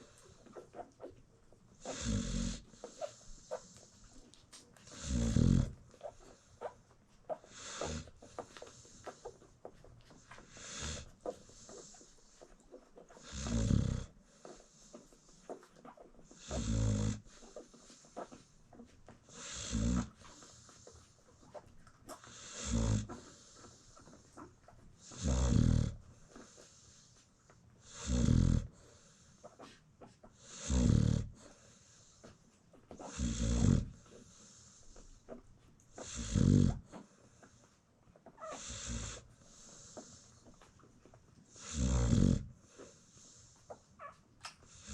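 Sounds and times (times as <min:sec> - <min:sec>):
dog snoring: 0:01.8 - 0:27.2, 0:27.8 - 0:29.8, 0:30.4 - 0:37.7, 0:38.3 - 0:44.9.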